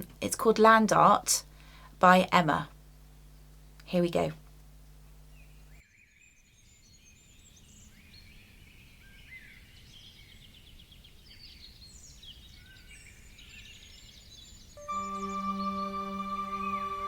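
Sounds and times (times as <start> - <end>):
low steady background hiss: 0.0 - 17.0
small birds chirping and trilling: 5.3 - 14.8.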